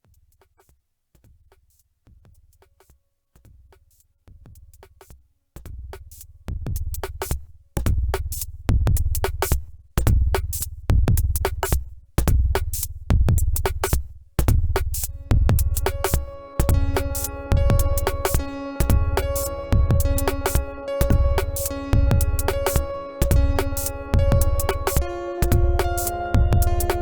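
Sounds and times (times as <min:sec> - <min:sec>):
drum machine beat: 0:03.4 - 0:27.0
synthesizer chord tones: 0:15.2 - 0:27.0.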